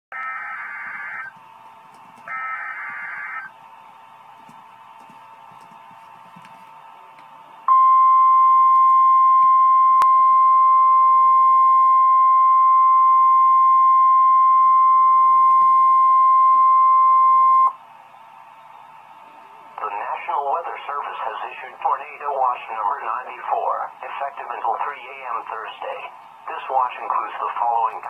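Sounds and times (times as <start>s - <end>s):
loud steady warning tone: 0.1s - 5.0s, 7.4s - 28.0s
faint radio hiss: 18.0s - 28.0s.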